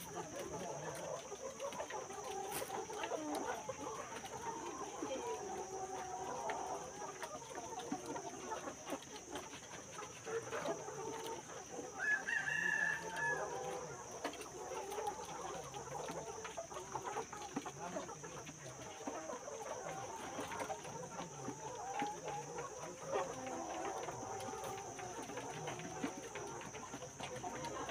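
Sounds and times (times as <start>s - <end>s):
chickens clucking: 0.0s - 27.9s
rooster crowing: 12.0s - 13.5s.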